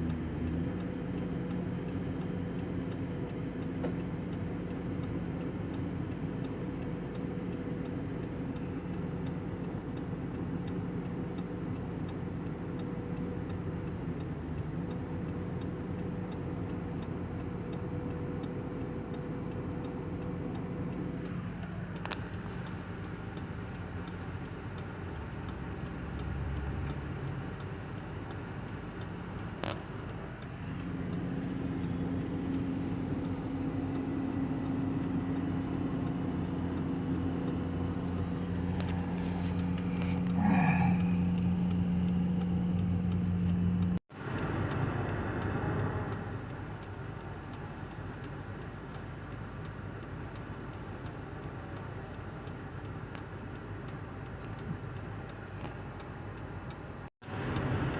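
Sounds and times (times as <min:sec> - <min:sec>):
fine regular ticking: 0:00.0 - 0:44.1.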